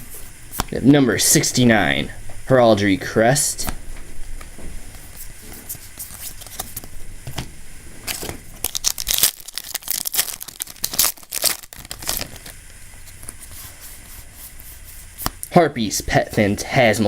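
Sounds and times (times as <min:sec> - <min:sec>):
foil wrapper tearing and crinkling: 0:06.0 - 0:06.9, 0:08.1 - 0:13.6.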